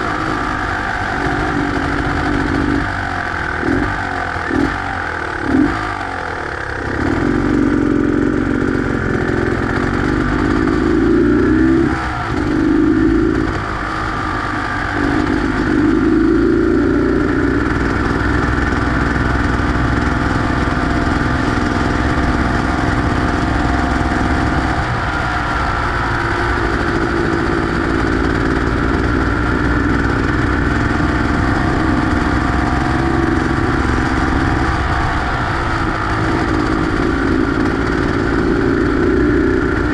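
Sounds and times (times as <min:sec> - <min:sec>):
two-stroke motorcycle engine revving: 0:00.0 - 0:39.9.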